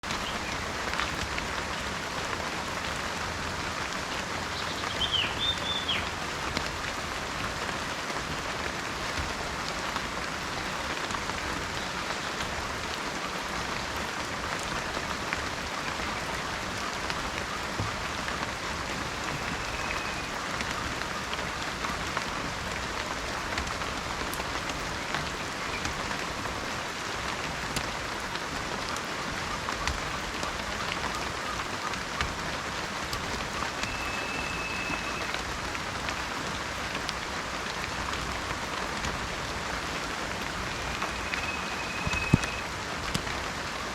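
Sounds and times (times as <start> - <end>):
heavy rain: 0.0 - 43.9
bird chirp: 4.6 - 6.1, 19.3 - 20.4, 40.9 - 42.6.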